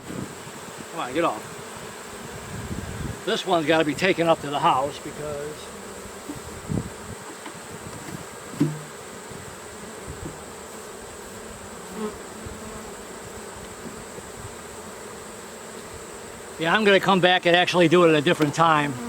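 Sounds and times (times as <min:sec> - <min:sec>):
bees buzzing: 0:00.0 - 0:19.0
short knock: 0:08.0 - 0:08.9.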